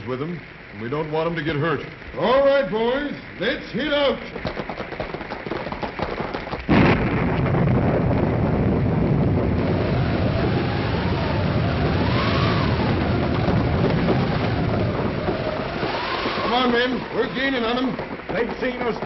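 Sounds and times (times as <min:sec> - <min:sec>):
heavy rain: 0:00.0 - 0:19.0
galloping hoofbeats: 0:00.9 - 0:06.7, 0:09.7 - 0:19.0
loud thunderclap: 0:04.1 - 0:19.0
howling wind: 0:06.7 - 0:19.0.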